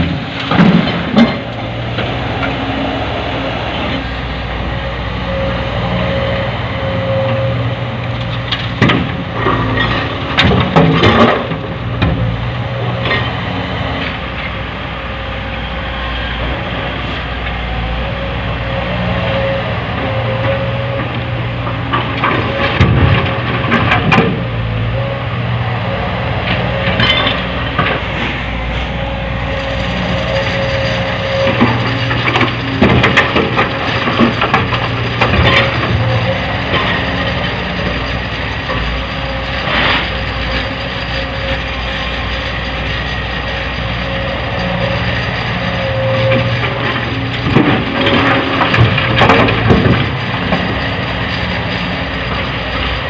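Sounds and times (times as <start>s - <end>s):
heavy diesel machinery running: 0.0s - 53.0s.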